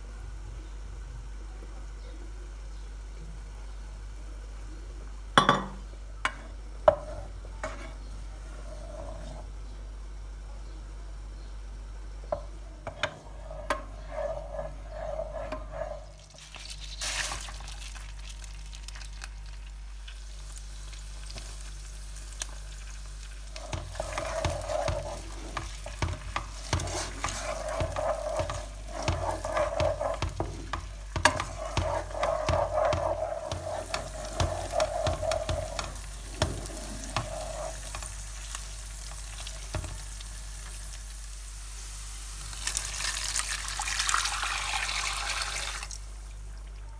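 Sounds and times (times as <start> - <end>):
utensil scraping a pan: 6.9 - 9.5, 12.9 - 16.3, 23.4 - 40.1
food frying in a pan: 11.0 - 46.9.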